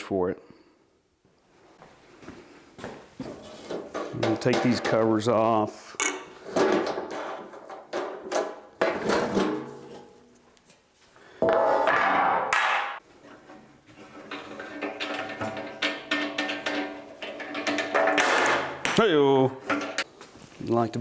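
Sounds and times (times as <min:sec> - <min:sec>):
metallic clatter of covers: 0:03.2 - 0:05.4, 0:06.0 - 0:10.4, 0:13.2 - 0:19.0, 0:19.6 - 0:20.1.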